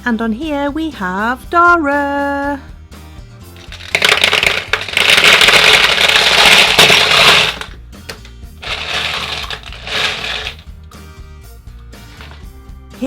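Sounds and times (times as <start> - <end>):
quiet background music: 0.0 - 13.0
plastic packaging crinkling: 3.6 - 7.7, 8.6 - 10.6.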